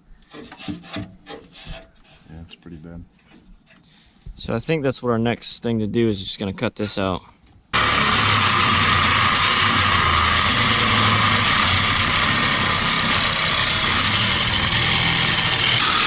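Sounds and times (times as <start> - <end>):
power tool cutting sheet metal: 7.8 - 16.0.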